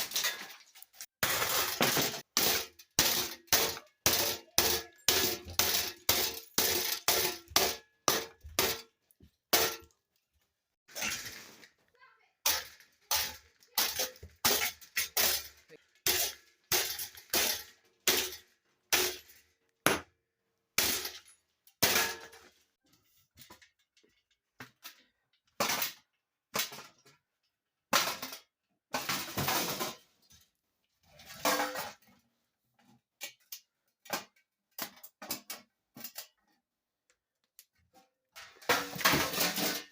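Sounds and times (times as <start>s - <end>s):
breaking crashes: 0.0s - 8.8s, 10.9s - 11.8s, 38.6s - 39.9s
fan being smashed: 0.0s - 8.9s, 38.6s - 39.9s.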